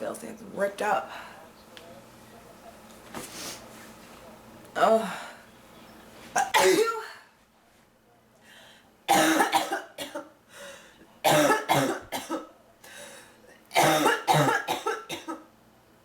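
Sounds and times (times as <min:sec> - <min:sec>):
woman coughing: 0:06.4 - 0:07.2, 0:09.1 - 0:10.3, 0:11.2 - 0:12.5, 0:13.8 - 0:15.5.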